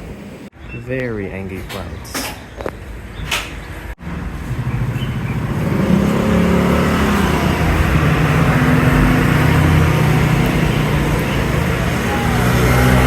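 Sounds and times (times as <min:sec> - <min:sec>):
street traffic noise: 0:00.0 - 0:13.0
vehicle engine accelerating: 0:04.0 - 0:13.0.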